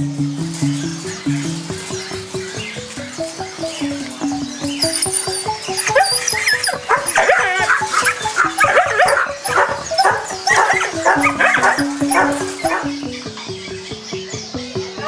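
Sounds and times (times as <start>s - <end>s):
background music stepped melody: 0.0s - 15.0s
dogs yelping and whimpering: 4.6s - 13.2s.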